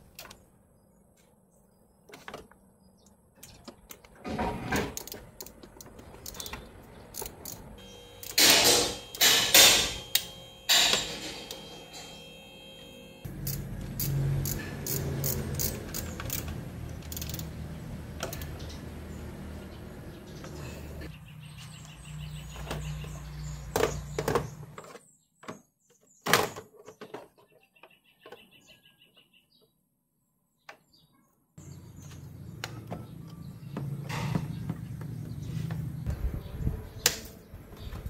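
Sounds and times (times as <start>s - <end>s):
hand tools clicking on metal: 5.0s - 12.2s, 13.3s - 17.5s.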